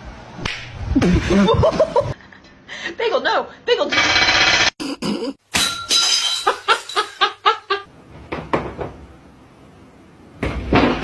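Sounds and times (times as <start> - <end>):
person laughing: 0.9 - 2.4, 4.8 - 5.4.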